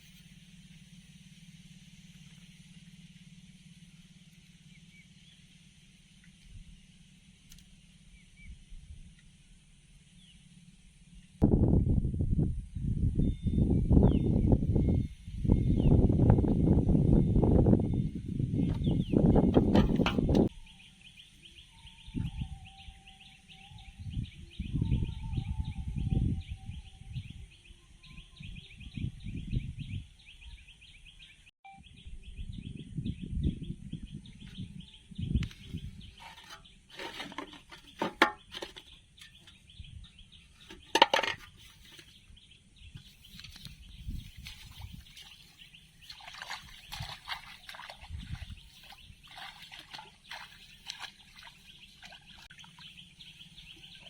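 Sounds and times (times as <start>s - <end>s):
pulsing chirring of insects: 0.0s - 11.4s.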